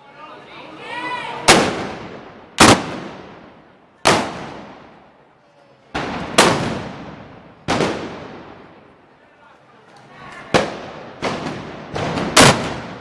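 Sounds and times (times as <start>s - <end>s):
gunpowder blasts with echo: 1.5s - 5.0s, 5.9s - 8.9s, 10.5s - 13.0s.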